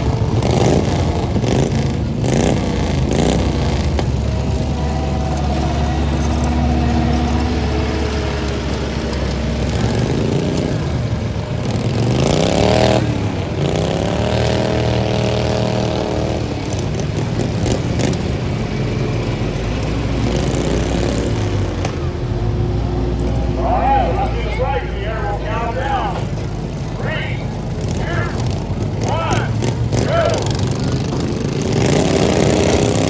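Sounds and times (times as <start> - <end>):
engine revving in a rising whine: 0.0 - 26.5, 27.8 - 33.0
small lawn mower engines running: 0.0 - 33.0.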